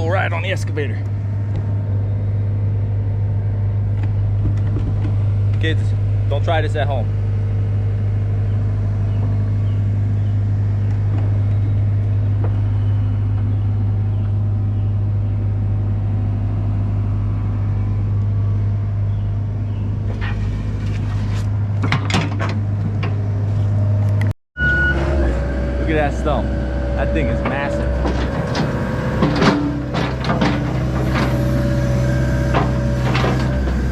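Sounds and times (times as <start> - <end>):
excavator diesel engine humming: 0.0 - 33.9.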